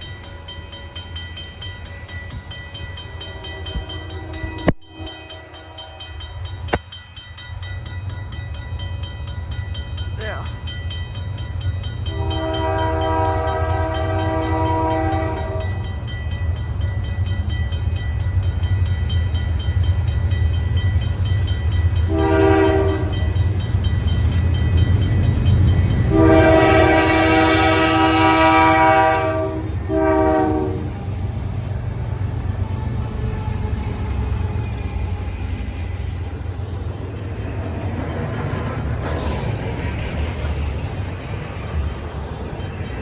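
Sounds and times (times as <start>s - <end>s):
crossing bell ringing: 0.0s - 43.0s
diesel locomotive rumble: 10.1s - 43.0s
locomotive air horn blasts: 12.1s - 15.8s, 22.1s - 23.2s, 26.1s - 31.0s.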